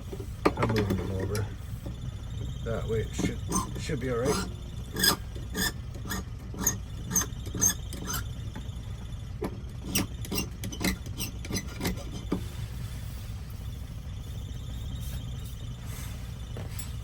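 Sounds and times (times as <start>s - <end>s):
squeaky metal lock clicks: 4.3s - 8.2s, 9.8s - 12.3s.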